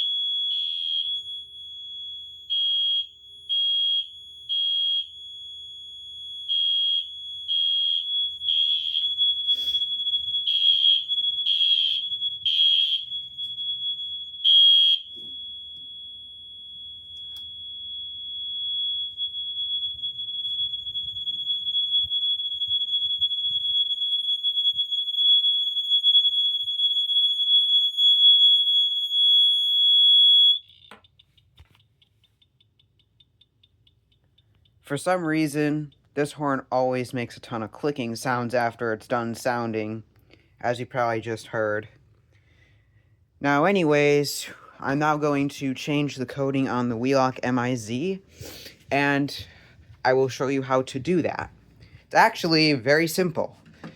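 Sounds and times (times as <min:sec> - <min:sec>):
piercing steady alarm horn tone: 0:00.0 - 0:31.5.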